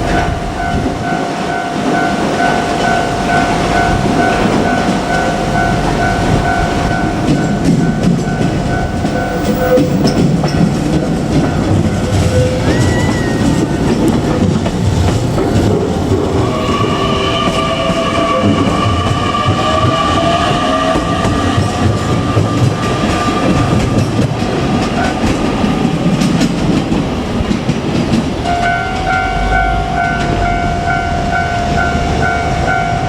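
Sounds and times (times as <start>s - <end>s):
crossing warning bell: 0.0s - 27.0s, 28.3s - 33.0s
train wheels clattering over rails: 0.0s - 33.0s.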